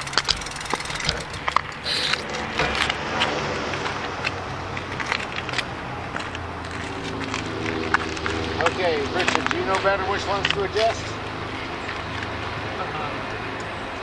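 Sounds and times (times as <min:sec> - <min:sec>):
bicycle chain clicks and rattles: 0:00.0 - 0:11.0
vehicle low hum: 0:00.0 - 0:14.0.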